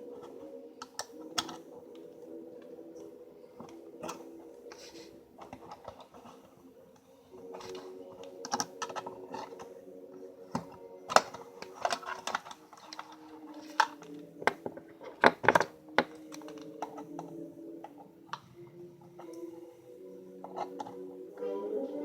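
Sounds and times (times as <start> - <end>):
faint background music: 0.0 - 22.0.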